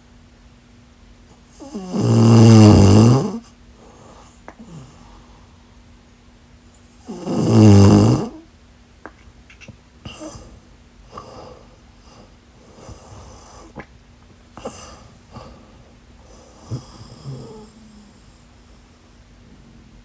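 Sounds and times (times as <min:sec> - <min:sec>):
person snoring: 0:01.6 - 0:05.2, 0:07.0 - 0:08.4, 0:14.6 - 0:18.3.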